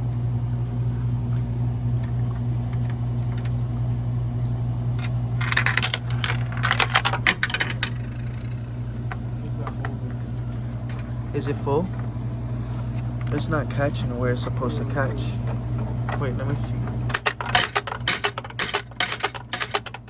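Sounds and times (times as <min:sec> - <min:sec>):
steady low hum: 0:00.0 - 0:20.0
coins clattering through machine: 0:05.4 - 0:08.4, 0:17.1 - 0:20.0.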